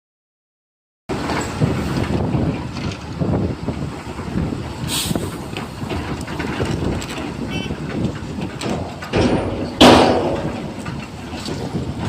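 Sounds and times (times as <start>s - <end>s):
diesel machinery rumbling: 1.1s - 12.0s
short hiss: 4.9s - 5.3s.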